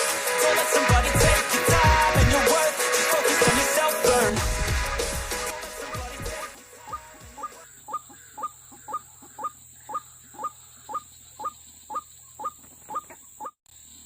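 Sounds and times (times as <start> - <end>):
waterhen calling: 5.8 - 13.6.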